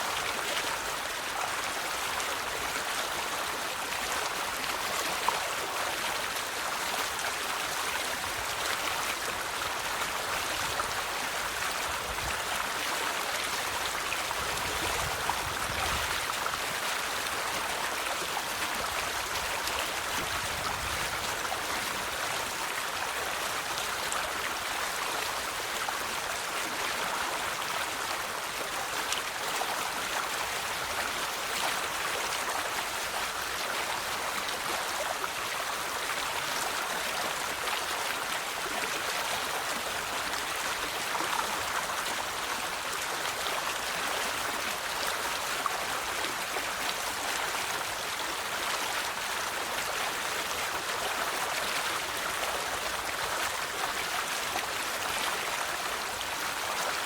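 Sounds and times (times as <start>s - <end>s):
river water flowing over stones: 0.0s - 57.0s.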